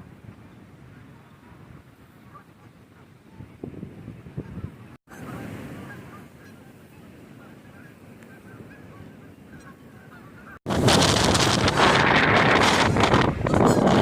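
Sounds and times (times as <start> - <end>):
wind buffeting microphone: 0.0 - 14.0
geese honking: 7.7 - 10.6.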